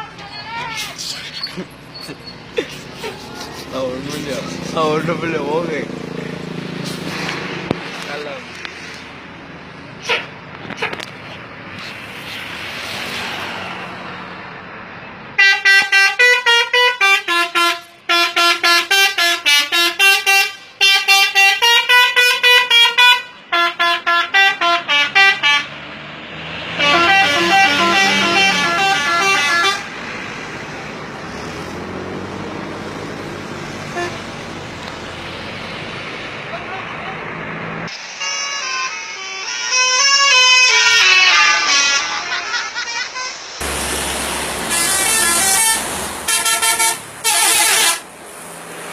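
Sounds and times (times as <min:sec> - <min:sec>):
street and engine noise: 0:00.0 - 0:48.9
full horn blast: 0:15.4 - 0:25.8, 0:26.6 - 0:30.0, 0:33.9 - 0:34.2, 0:38.1 - 0:48.1
musical multi-tone horn: 0:15.4 - 0:25.8, 0:26.7 - 0:29.9, 0:33.9 - 0:34.2, 0:38.0 - 0:44.0, 0:44.6 - 0:48.0.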